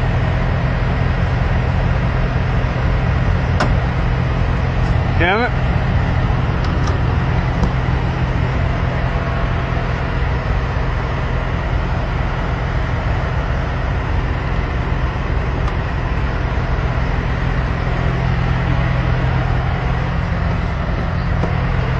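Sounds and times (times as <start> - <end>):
truck engine idling: 0.0 - 21.9.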